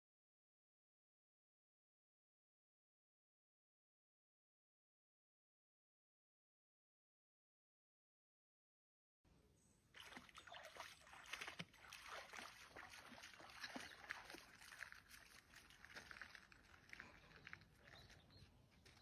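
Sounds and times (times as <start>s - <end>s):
paddle splashing in lake water: 10.0s - 19.0s.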